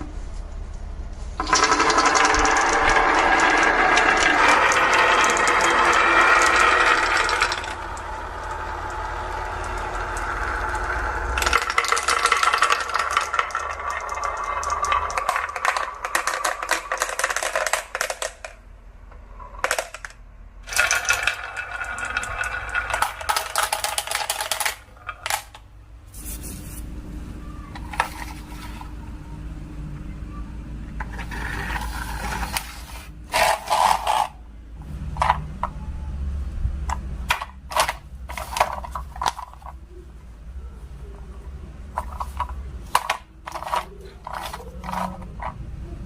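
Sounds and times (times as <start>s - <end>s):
marbles clicking as they drop: 1.4s - 18.6s, 19.4s - 25.6s
marbles rolling down wooden run: 1.4s - 18.6s, 19.2s - 25.6s, 31.0s - 34.4s, 42.0s - 45.6s.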